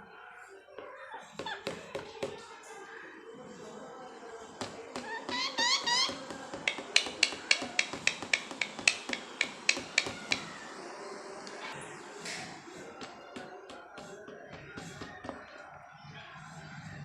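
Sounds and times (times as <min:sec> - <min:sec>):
parrot squeaking: 0:01.2 - 0:01.8, 0:04.9 - 0:10.7
beak tapping on hard toy: 0:04.6 - 0:10.6.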